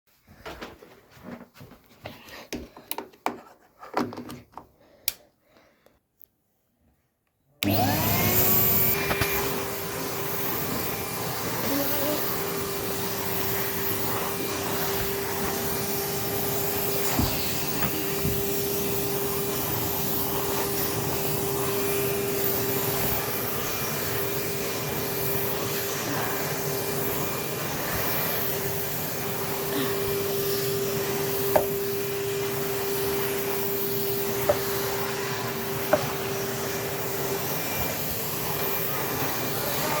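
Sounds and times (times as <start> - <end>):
vacuum cleaner running: 7.6 - 40.0.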